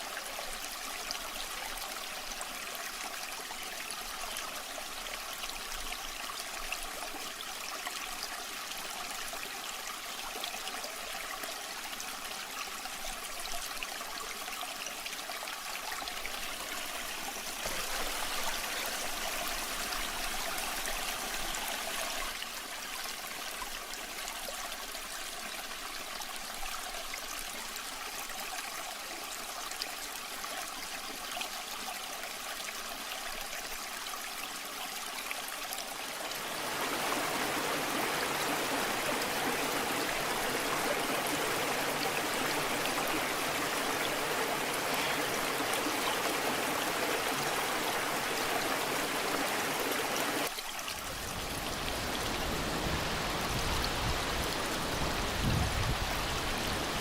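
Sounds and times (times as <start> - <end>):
waterfall rushing: 36.4 - 50.5, 51.2 - 57.0.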